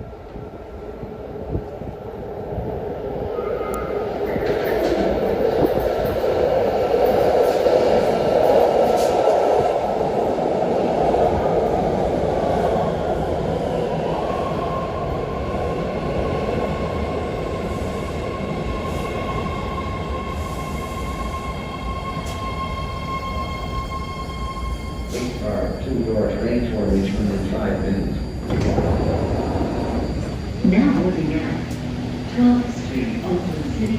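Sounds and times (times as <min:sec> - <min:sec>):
train rumble: 0:00.0 - 0:33.9
steady high whine: 0:24.0 - 0:33.9.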